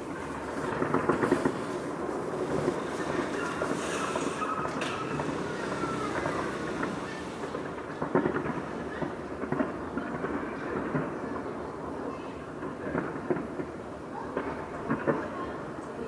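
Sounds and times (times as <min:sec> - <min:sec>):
sharp firework bangs: 0:00.0 - 0:10.6
fireworks bursting and crackling: 0:00.0 - 0:11.2.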